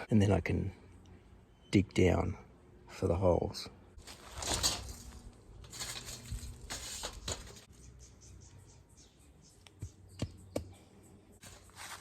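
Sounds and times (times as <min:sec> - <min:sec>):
soft handling rustles: 0:04.0 - 0:07.7.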